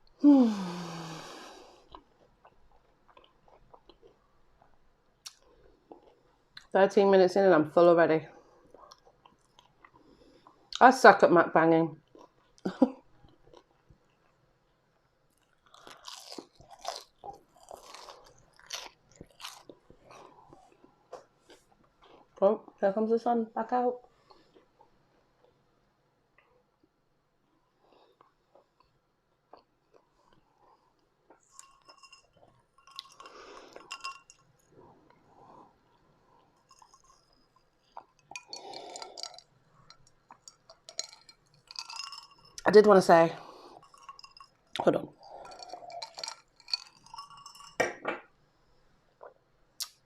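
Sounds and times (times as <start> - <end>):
chewing crunchy food: 1.8 - 6.7, 8.4 - 10.8, 12.0 - 22.8, 28.1 - 42.7, 43.4 - 47.8
glass clinking: 31.4 - 34.7, 36.6 - 42.9, 43.8 - 48.3.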